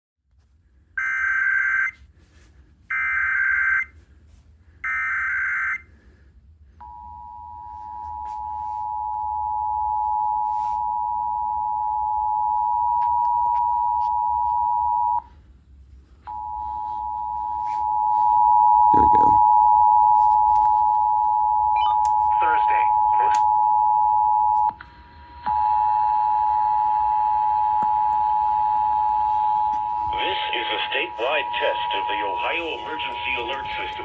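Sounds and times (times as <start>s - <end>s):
steady two-tone attention signal: 25.6s - 34.0s.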